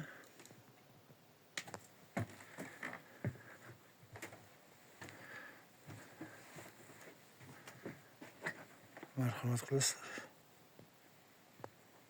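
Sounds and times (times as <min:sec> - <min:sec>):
floorboards creaking: 0:02.2 - 0:03.6
footsteps on wooden floor: 0:02.2 - 0:09.1.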